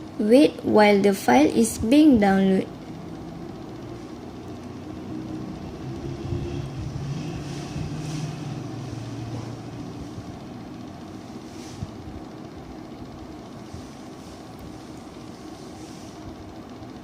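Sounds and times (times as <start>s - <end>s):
engine-like rumble: 2.7s - 12.0s.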